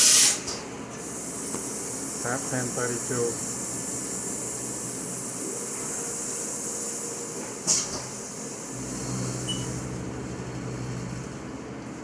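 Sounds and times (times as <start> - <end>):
milling machine high hiss: 1.0 - 7.5.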